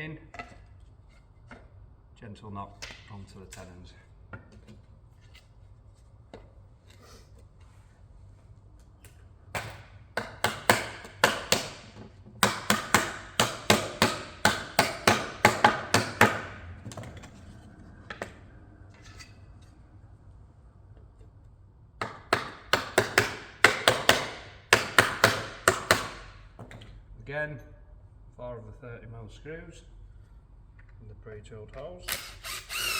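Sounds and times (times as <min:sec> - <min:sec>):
rubber mallet knocking plywood: 0:09.6 - 0:16.6, 0:22.0 - 0:26.8.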